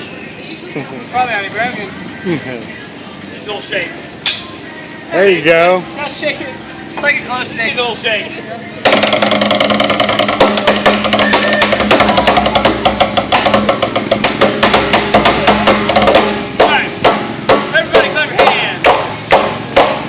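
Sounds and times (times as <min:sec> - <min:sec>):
backing music track: 0:01.0 - 0:20.0
fast drumming with sticks: 0:08.8 - 0:20.0.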